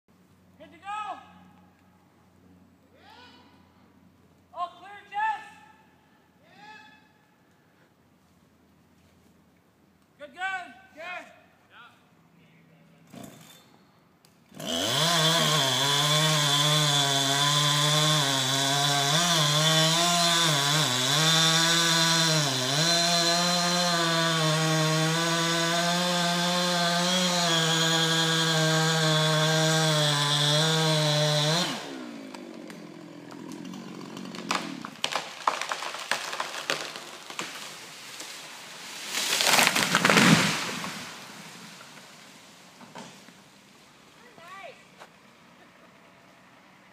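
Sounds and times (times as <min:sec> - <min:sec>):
chainsaw cutting: 0:13.1 - 0:13.6, 0:14.5 - 0:43.4
wood cracking: 0:32.0 - 0:42.2
tree crashing down: 0:32.6 - 0:43.0.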